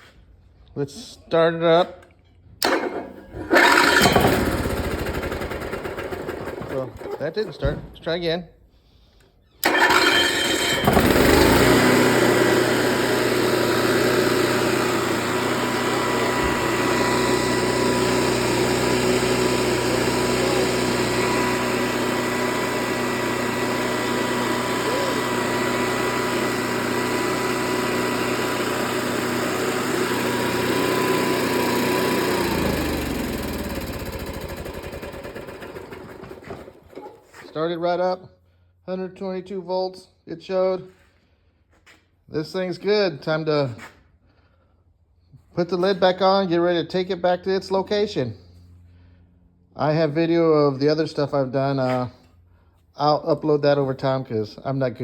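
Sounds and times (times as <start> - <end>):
generator engine running: 2.6 - 7.3, 9.6 - 37.4
electric starter cranking: 2.6 - 7.5, 9.6 - 37.4.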